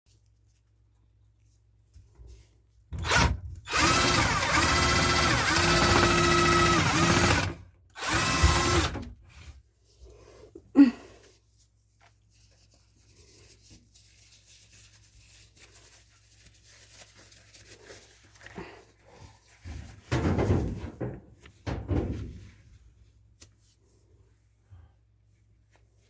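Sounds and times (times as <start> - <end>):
scraping and rustling: 11.4 - 23.9.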